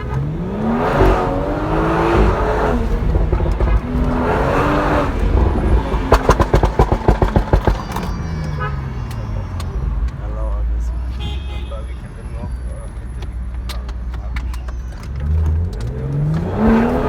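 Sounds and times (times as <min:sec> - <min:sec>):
car engine accelerating hard: 0:00.0 - 0:10.6, 0:15.0 - 0:17.0
exhaust pops and crackles: 0:00.0 - 0:10.6, 0:12.4 - 0:17.0.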